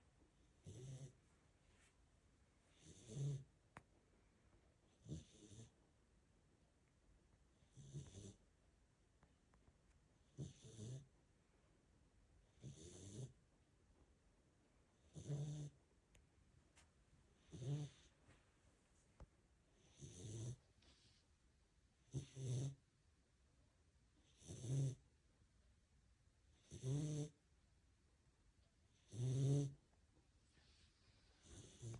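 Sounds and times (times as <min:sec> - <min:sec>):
puppy snoring softly: 0:00.4 - 0:01.3, 0:02.7 - 0:03.6, 0:04.9 - 0:05.8, 0:07.6 - 0:08.5, 0:10.2 - 0:11.2, 0:12.4 - 0:13.4, 0:15.0 - 0:15.8, 0:17.4 - 0:18.4, 0:19.8 - 0:21.2, 0:22.0 - 0:22.8, 0:24.2 - 0:25.1, 0:26.5 - 0:27.4, 0:28.9 - 0:29.8, 0:30.5 - 0:31.9.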